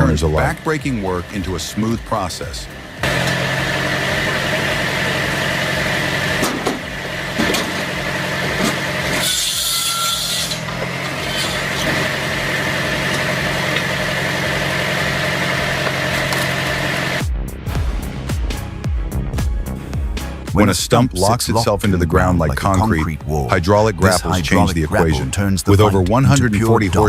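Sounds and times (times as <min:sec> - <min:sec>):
circular saw machine running: 0:00.0 - 0:17.2.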